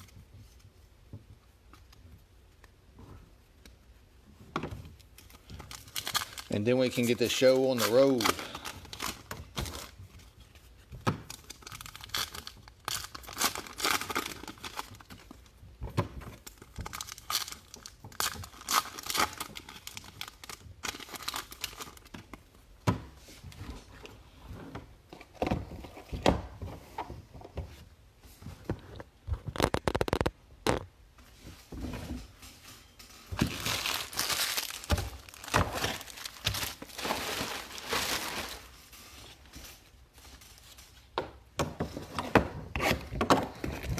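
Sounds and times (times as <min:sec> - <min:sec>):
wrappers being torn and crinkled: 0:05.1 - 0:10.0, 0:11.3 - 0:15.3, 0:16.4 - 0:22.2, 0:29.5 - 0:30.8, 0:33.1 - 0:39.0.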